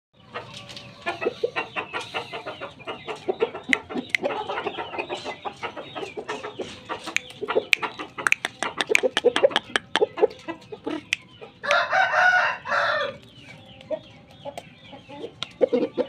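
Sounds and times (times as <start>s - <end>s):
chickens clucking: 0.2s - 16.0s
sharp clicks: 7.1s - 10.0s.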